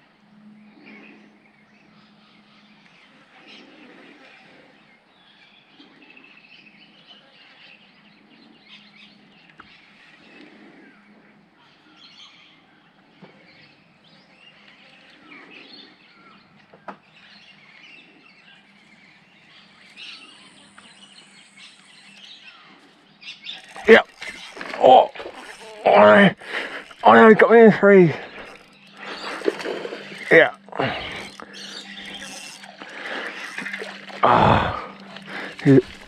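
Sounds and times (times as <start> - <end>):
birds chirping: 0.0 - 36.0
faint outdoor hiss: 13.5 - 36.0.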